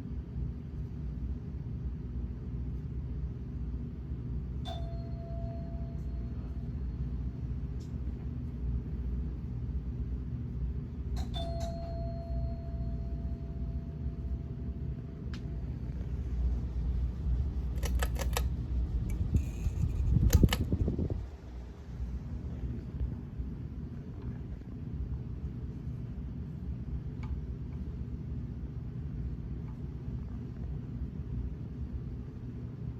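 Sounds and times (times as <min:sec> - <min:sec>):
ceiling fan humming: 0:00.0 - 0:32.9
clicks: 0:17.7 - 0:18.5, 0:19.1 - 0:20.9.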